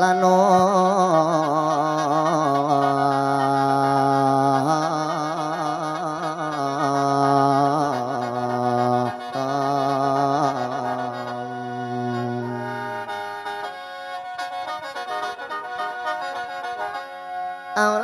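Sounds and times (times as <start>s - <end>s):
person singing a wordless wail: 0.0s - 12.7s.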